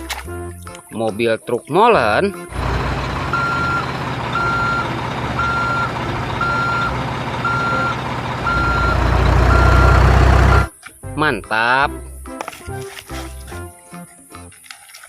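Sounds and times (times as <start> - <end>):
truck engine rumble: 2.4 - 10.7
truck reversing alarm beeping: 2.5 - 10.7.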